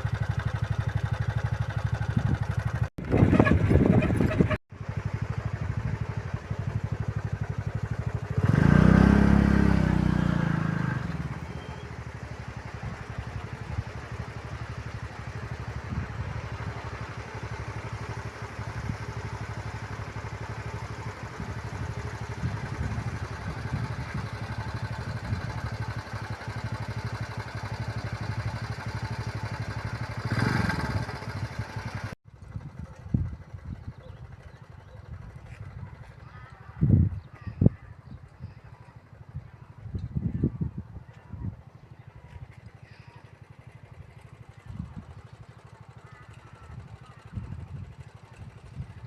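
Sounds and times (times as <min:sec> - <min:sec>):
engine running: 0:00.0 - 0:37.0, 0:38.2 - 0:49.0.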